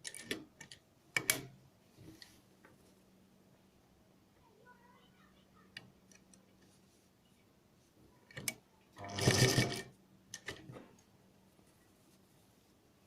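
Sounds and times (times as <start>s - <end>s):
sewing machine stitching: 9.0s - 10.6s.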